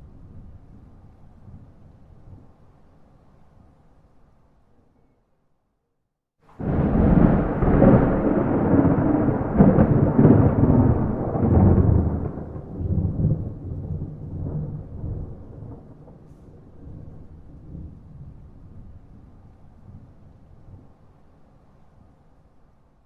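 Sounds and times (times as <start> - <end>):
thunder rumbling: 6.5 - 20.8.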